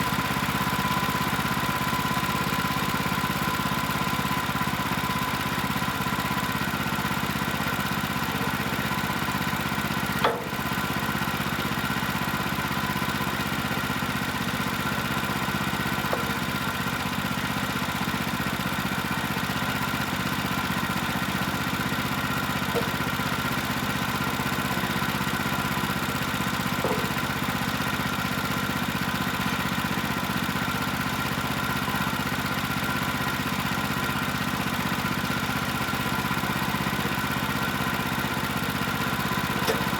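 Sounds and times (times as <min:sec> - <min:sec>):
gas engine running: 0:00.0 - 0:39.9.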